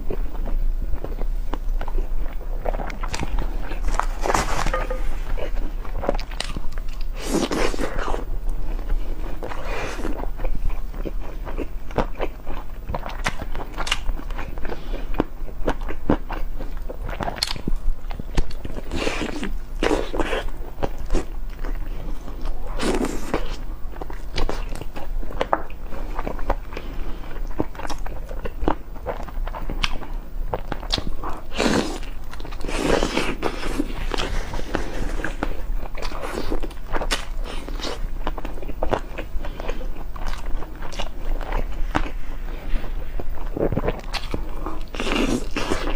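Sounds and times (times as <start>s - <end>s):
person chewing: 0.0s - 45.9s
smacking bite: 1.1s - 8.6s, 17.1s - 20.5s, 43.5s - 45.9s.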